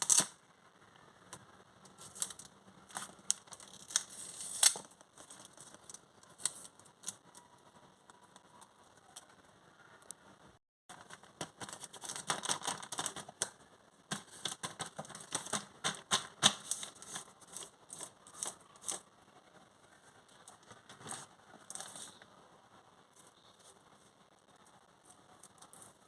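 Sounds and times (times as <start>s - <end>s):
crinkly packaging crackling: 1.8s - 9.3s, 10.9s - 19.1s.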